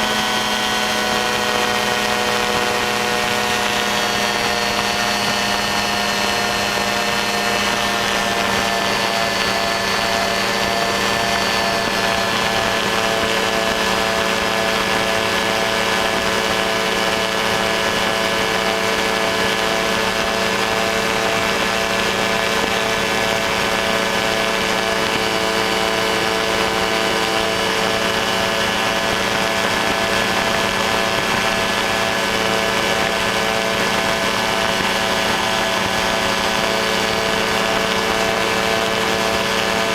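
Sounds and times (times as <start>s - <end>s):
aircraft engine drone: 0.0s - 39.9s.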